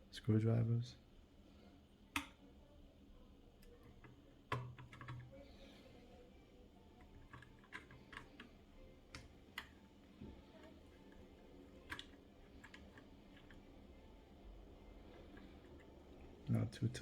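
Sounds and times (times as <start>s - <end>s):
screwdriver clicks and taps: 4.0s - 5.2s, 11.8s - 13.6s.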